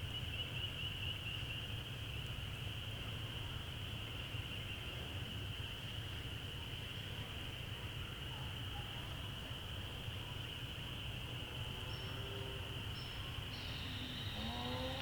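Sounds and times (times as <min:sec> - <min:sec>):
faint whistled notes: 0:13.0 - 0:15.0.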